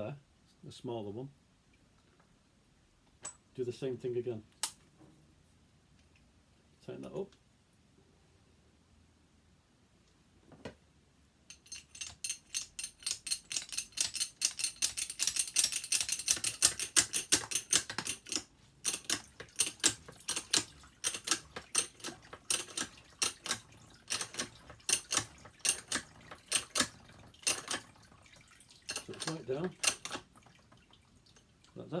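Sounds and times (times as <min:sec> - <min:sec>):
rapid mechanical clicks: 0:11.6 - 0:27.9, 0:28.9 - 0:30.3.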